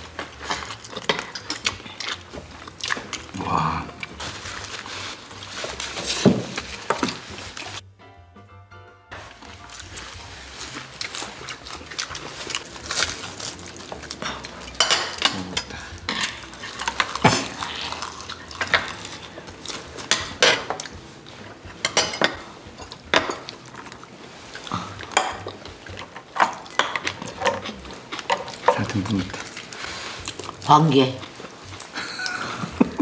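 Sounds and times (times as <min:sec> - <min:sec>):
eating sounds: 0:00.0 - 0:07.8, 0:09.2 - 0:33.0
cutlery clinking against dishes: 0:00.1 - 0:03.3, 0:13.2 - 0:30.6.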